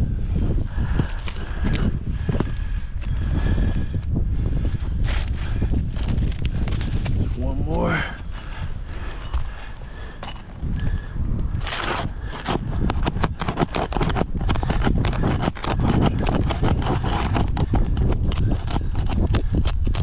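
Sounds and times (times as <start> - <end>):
shingles crackling and tearing: 11.6 - 20.0.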